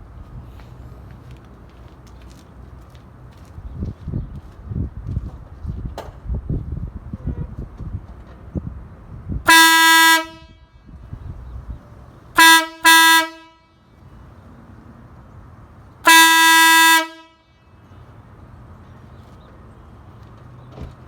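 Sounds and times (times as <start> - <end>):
air horn blasts: 9.4 - 10.9, 12.4 - 13.9, 16.0 - 17.6.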